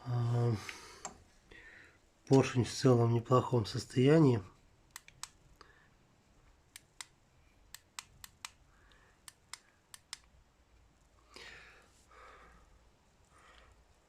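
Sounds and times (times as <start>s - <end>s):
faint sharp clicks: 4.9s - 5.8s, 6.7s - 10.9s.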